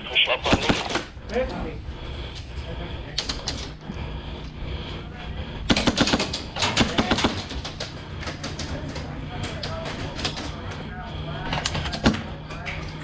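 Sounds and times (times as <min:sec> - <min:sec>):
airsoft guns firing bursts: 0:00.4 - 0:01.1, 0:05.7 - 0:07.9.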